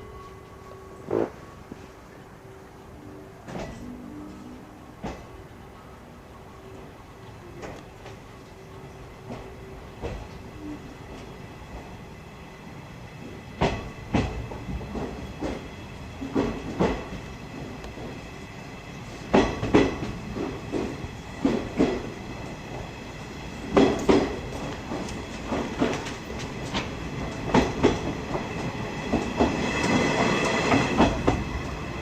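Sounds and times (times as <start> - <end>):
low rumble of train coach: 0.0 - 32.0
train wheels clacking over rail joints: 13.6 - 18.2, 19.2 - 22.9, 23.6 - 31.8.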